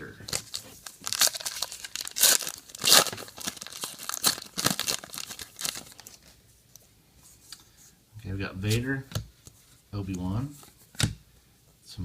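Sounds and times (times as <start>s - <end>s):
card pack wrapper tearing: 0.3s - 6.2s.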